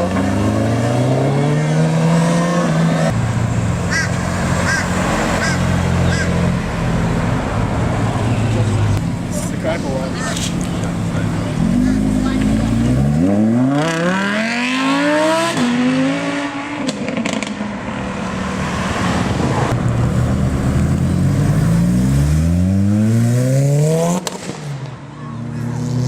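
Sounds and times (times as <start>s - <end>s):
car engine revving hard: 11.5s - 17.6s.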